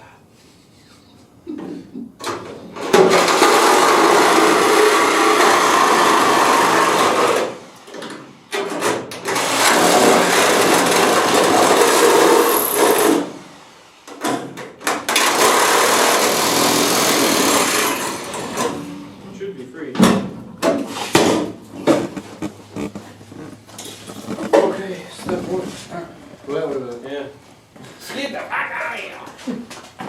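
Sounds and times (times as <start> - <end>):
power tool on car body steel: 3.1 - 7.7, 9.3 - 13.4, 15.1 - 19.1.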